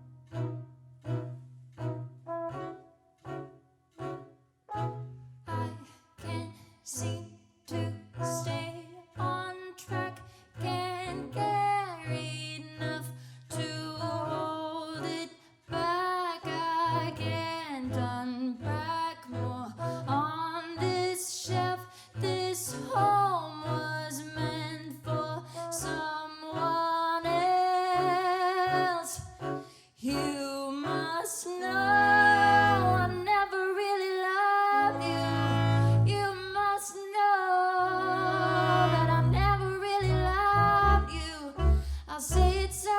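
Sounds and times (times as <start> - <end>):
alto saxophone: 0.0 - 10.0, 13.6 - 21.6, 22.7 - 33.3, 34.8 - 36.3, 37.8 - 42.9
double bass notes: 0.0 - 15.1, 31.7 - 33.3, 34.8 - 36.3, 37.9 - 42.9
trombone: 2.2 - 3.4
person singing jazz: 37.4 - 42.9.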